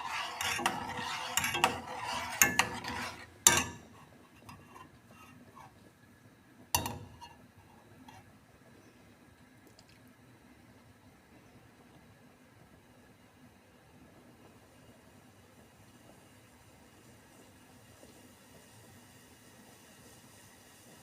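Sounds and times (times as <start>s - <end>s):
spoon stirring in saucepan: 0.0s - 5.8s, 6.8s - 8.3s.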